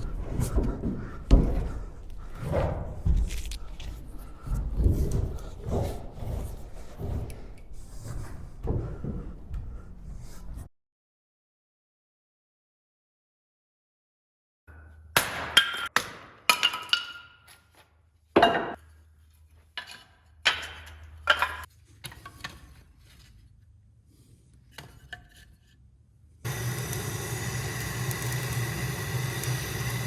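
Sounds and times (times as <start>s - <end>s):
metal tools clinking and knocking: 19.7s - 21.7s.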